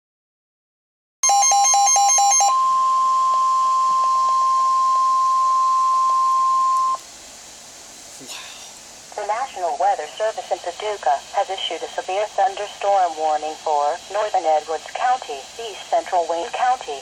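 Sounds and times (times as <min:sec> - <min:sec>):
steady warning alarm tone: 0:01.2 - 0:07.0.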